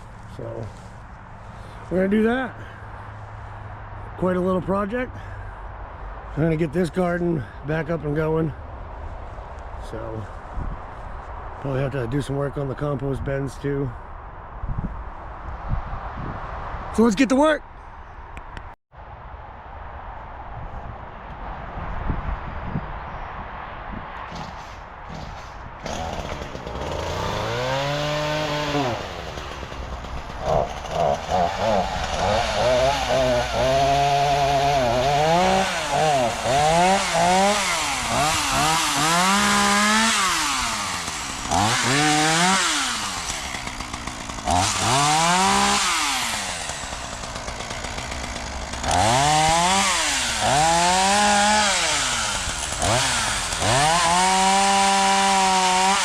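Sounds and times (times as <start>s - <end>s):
chainsaw engine revving: 24.3s - 56.0s.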